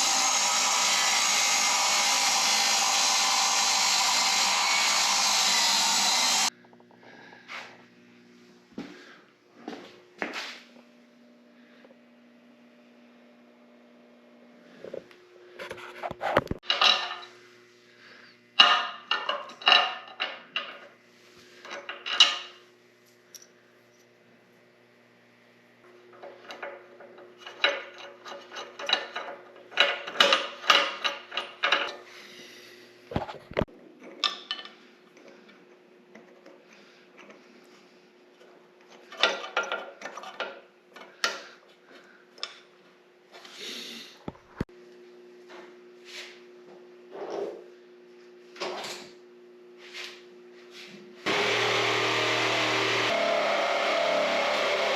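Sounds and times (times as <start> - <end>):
metal tools clinking and knocking: 16.6 - 17.3, 18.6 - 20.9, 21.6 - 22.6, 26.2 - 32.0.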